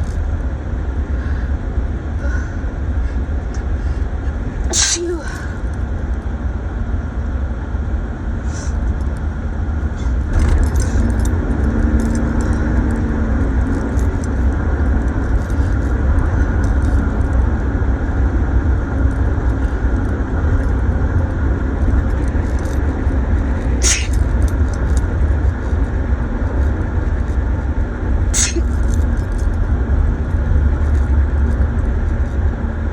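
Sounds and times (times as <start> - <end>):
car engine and road rumble: 0.0 - 32.9
light clicking and rattling: 10.3 - 13.0, 13.6 - 17.4, 19.0 - 27.4, 28.4 - 29.7.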